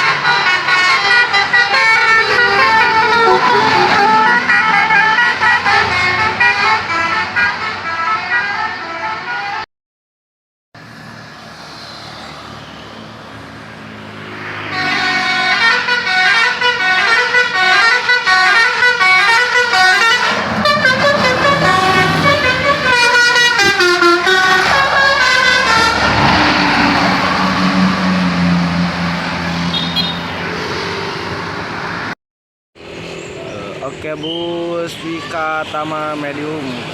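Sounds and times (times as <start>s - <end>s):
bus engine running: 0.0s - 9.1s, 15.0s - 29.8s
melodic electric bus horn: 0.0s - 9.7s, 14.4s - 30.5s.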